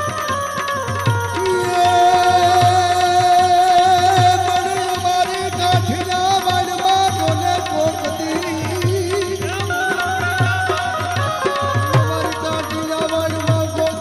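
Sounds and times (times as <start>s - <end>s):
tabla strokes: 0.0s - 14.0s.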